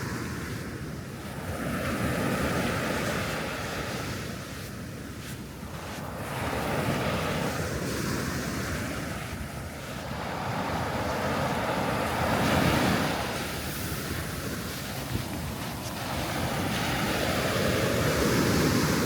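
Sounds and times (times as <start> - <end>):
sea waves breaking on beach: 0.0 - 19.0
wind on microphone: 0.0 - 19.0.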